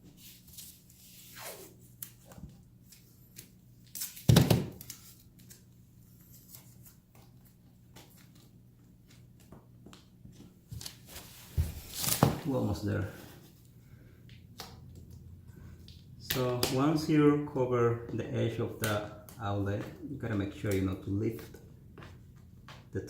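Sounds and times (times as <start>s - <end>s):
tape pulled from roll: 0.1s - 5.6s
tape ripping: 0.5s - 5.6s, 10.7s - 12.5s.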